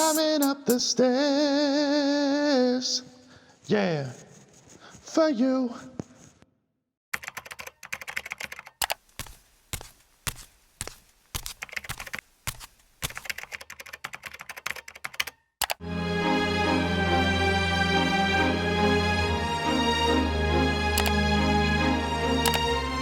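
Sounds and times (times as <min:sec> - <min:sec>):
music: 0:00.0 - 0:00.8, 0:15.8 - 0:23.0
rapid irregular clicking and tapping: 0:07.2 - 0:15.8.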